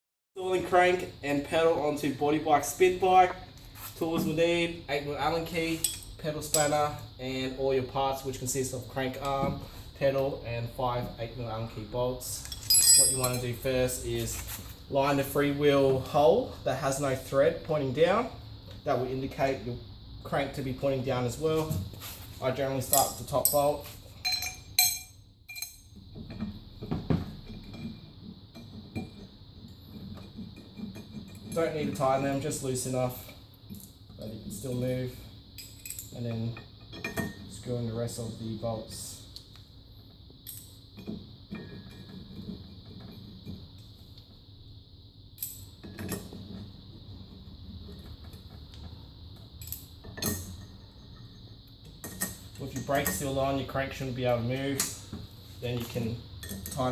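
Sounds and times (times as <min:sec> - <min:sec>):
metal clinks and scrapes: 0:05.6 - 0:06.9, 0:12.4 - 0:14.7, 0:22.8 - 0:26.5
metal clinks of allen key: 0:12.4 - 0:13.5.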